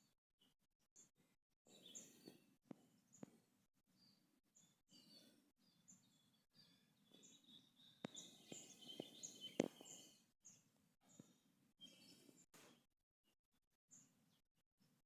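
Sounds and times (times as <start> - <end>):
faint birds chirping: 1.7 - 12.9.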